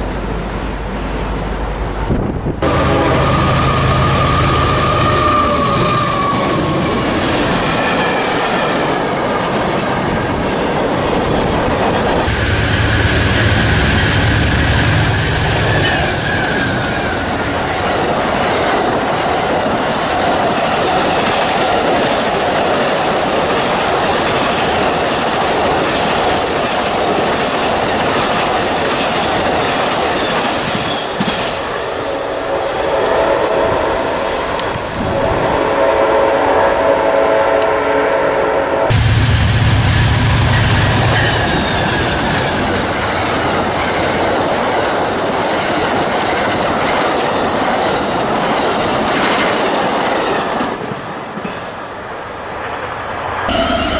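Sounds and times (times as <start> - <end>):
train wheels rumbling and clattering: 0.0 - 35.6, 38.9 - 53.0
train wheels squealing: 30.2 - 31.7.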